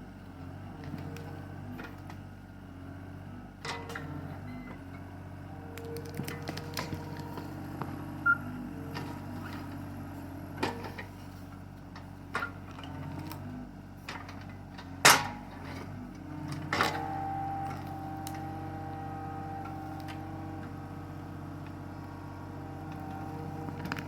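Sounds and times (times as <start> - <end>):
excavator engine running: 0.0 - 24.0.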